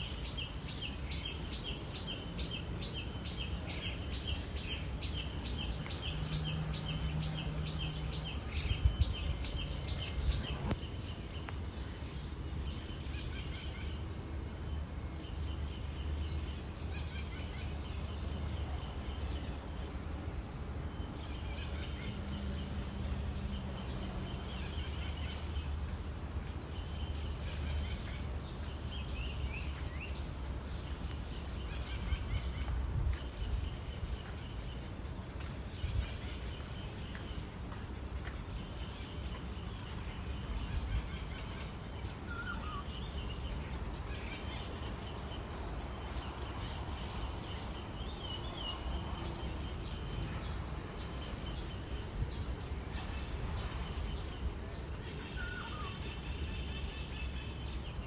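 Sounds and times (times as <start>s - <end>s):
cicadas droning: 0.0s - 58.0s
bird calling: 41.4s - 43.5s, 55.1s - 57.2s.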